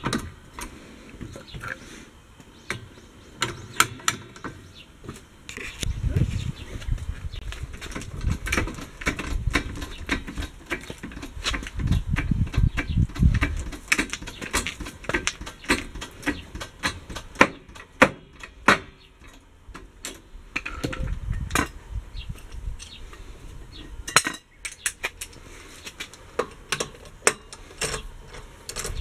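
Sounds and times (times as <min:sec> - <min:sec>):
metal tools clinking: 0:26.4 - 0:29.0.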